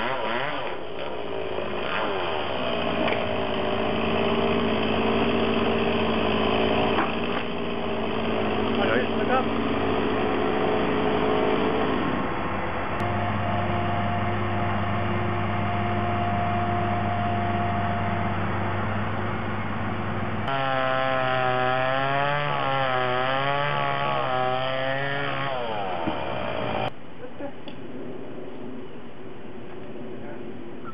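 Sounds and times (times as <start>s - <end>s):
chainsaw cutting: 0.0s - 12.3s, 13.0s - 18.6s, 20.4s - 26.9s
machinery engine drone: 0.4s - 22.0s.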